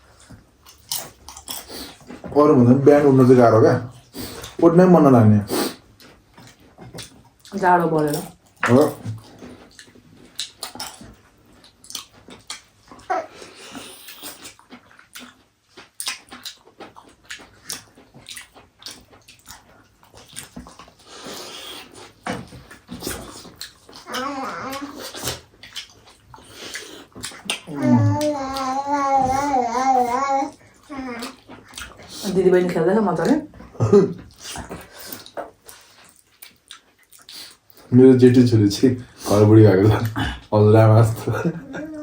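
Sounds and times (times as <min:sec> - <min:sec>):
chewing and slurping: 0:00.0 - 0:02.3, 0:05.5 - 0:29.4, 0:30.5 - 0:32.8, 0:33.5 - 0:37.9
high wavering voice: 0:27.7 - 0:28.8.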